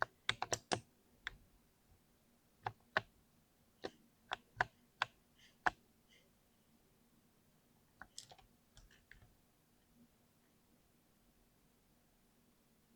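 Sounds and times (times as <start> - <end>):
mechanical keyboard keystroke clicks: 0.3 - 1.4.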